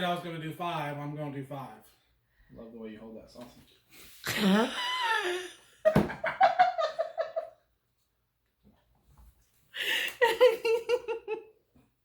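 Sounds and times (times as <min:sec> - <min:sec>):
people laughing: 0:04.4 - 0:07.5, 0:09.9 - 0:11.5.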